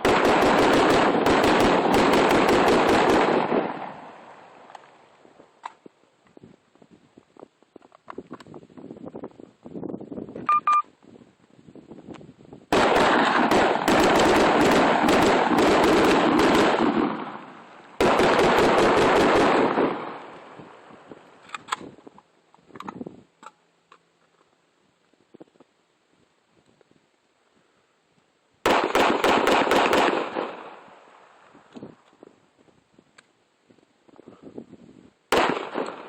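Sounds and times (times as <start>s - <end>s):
rapid gunfire: 0.0s - 3.8s, 12.7s - 17.4s, 18.0s - 20.2s, 28.7s - 30.6s, 35.3s - 36.0s.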